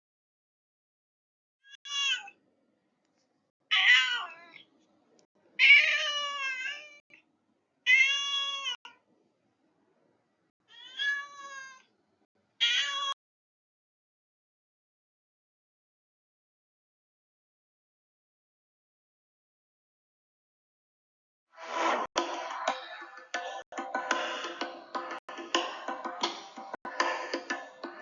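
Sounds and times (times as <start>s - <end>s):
cat meowing: 1.8s - 2.4s, 3.7s - 4.7s, 5.6s - 7.0s, 7.9s - 8.9s, 10.7s - 11.8s, 12.6s - 13.2s.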